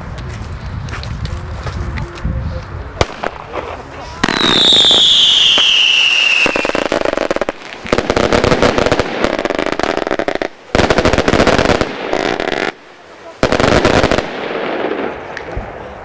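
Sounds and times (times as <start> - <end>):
fireworks crackling and popping: 2.6 - 16.0
firework whistle falling: 4.2 - 6.8.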